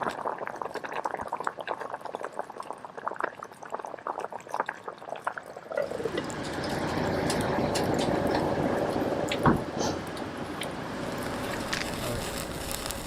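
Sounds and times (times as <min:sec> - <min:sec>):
pops and crackles: 0:00.0 - 0:08.5, 0:09.3 - 0:13.0
fish sizzling on a grill: 0:10.4 - 0:13.0.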